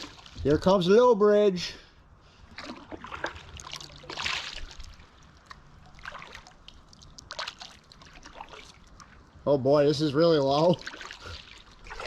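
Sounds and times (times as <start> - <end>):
paddle dripping: 0.0 - 0.5, 2.3 - 9.5, 10.2 - 12.0
water splashing and trickling: 0.0 - 0.9, 2.3 - 12.0.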